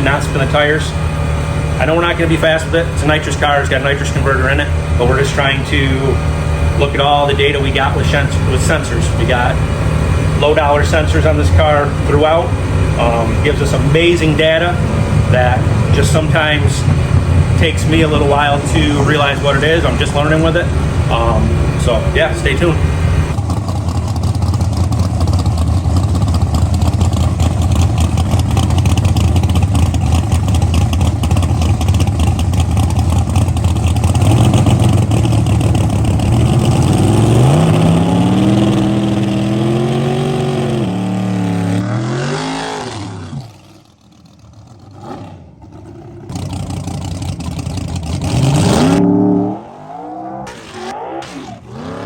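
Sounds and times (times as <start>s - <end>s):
drag car engine revving: 0.0s - 52.0s.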